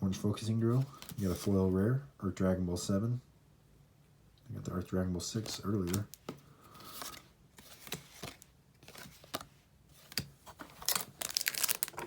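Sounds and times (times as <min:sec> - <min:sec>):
paper cards rustling: 0:05.4 - 0:12.0.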